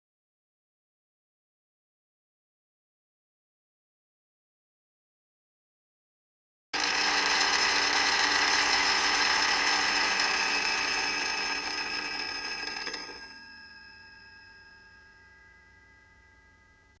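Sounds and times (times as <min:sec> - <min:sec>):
electric blender running: 0:06.8 - 0:14.2
faint steady tone: 0:12.8 - 0:17.0.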